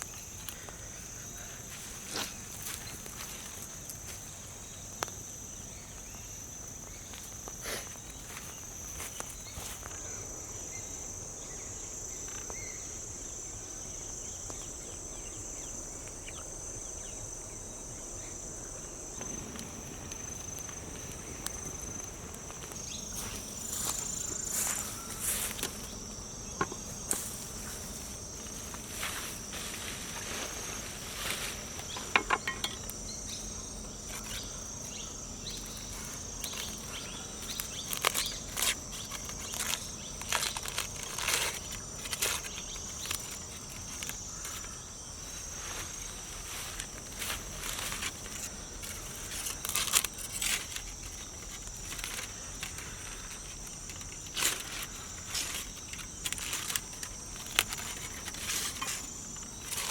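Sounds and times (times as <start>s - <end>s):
insects chirring: 0.0s - 59.9s
small clicks and knocks: 31.8s - 34.5s.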